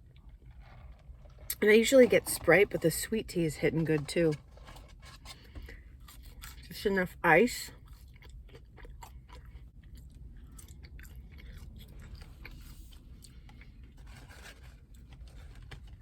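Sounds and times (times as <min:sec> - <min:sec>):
person chewing food: 0:00.0 - 0:01.6, 0:04.4 - 0:06.7, 0:07.7 - 0:16.0.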